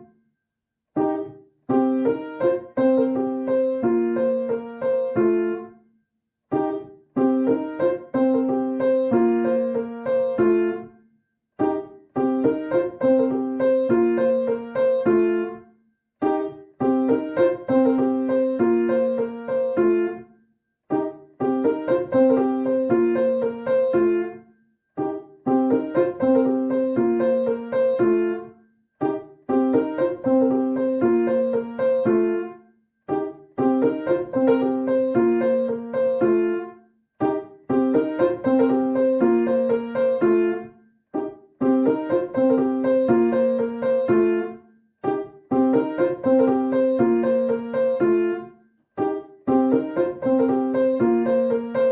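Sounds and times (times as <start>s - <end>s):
piano playing ringtone melody: 1.0s - 5.7s, 6.6s - 10.8s, 11.6s - 15.6s, 16.2s - 20.2s, 20.9s - 24.4s, 25.0s - 32.5s, 33.1s - 51.9s.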